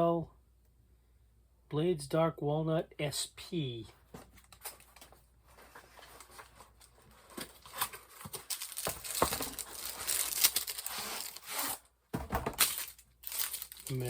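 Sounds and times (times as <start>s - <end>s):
packaging crinkling and rustling: 4.2s - 14.0s.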